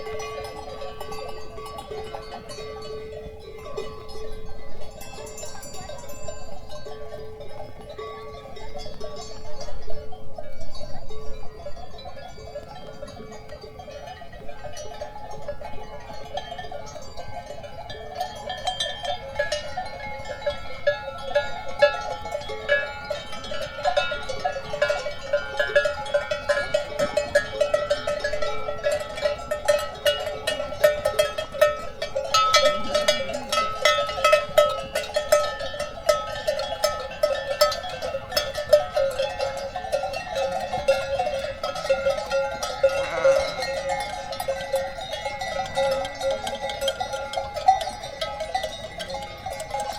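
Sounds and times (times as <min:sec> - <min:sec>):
animal bells clanking: 0:00.0 - 0:49.9.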